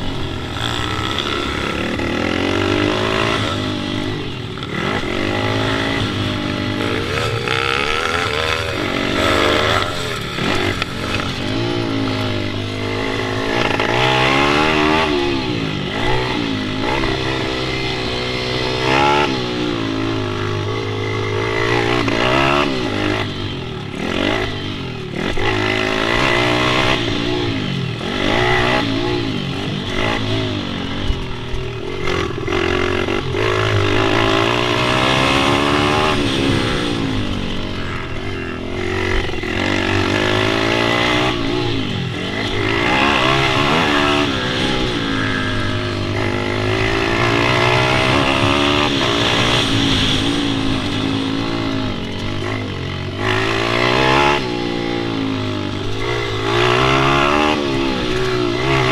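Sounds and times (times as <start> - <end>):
pit bike engine revving: 0.0 - 58.9.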